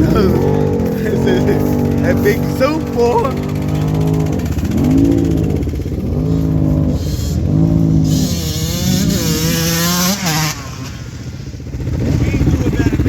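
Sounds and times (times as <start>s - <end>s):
atv engine revving: 0.0s - 13.0s.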